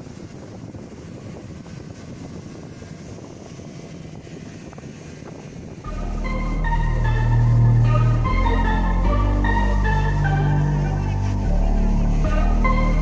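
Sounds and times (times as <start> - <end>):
rough low rumbling: 5.7 - 13.0
loud music: 5.9 - 13.0.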